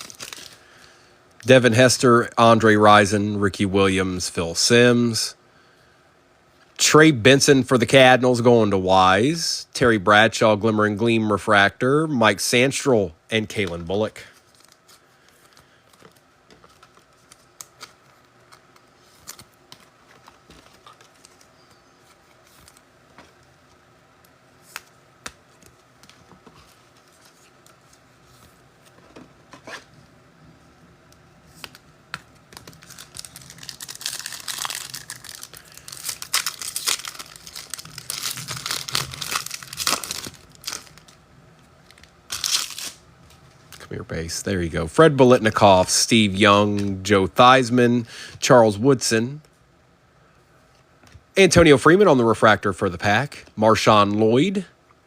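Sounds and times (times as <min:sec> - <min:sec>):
foil wrapper tearing and crinkling: 0:00.0 - 0:00.6, 0:32.6 - 0:41.2, 0:41.8 - 0:43.0.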